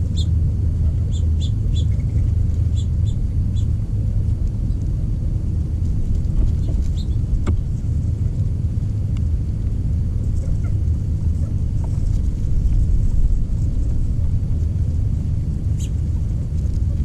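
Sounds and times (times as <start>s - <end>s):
low outdoor rumble: 0.0s - 17.0s.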